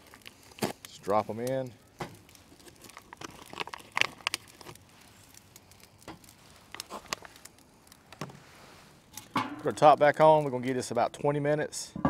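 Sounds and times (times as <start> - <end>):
wood bricks knocking onto charcoal: 1.4 - 2.3, 9.2 - 10.7
rustling: 2.1 - 10.2.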